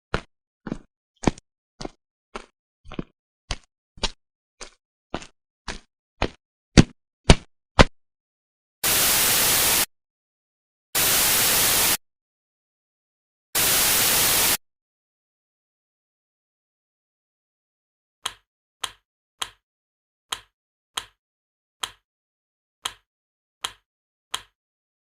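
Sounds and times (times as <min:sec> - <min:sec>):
white-noise static bursts: 0:08.8 - 0:09.9, 0:11.0 - 0:12.0, 0:13.6 - 0:14.6.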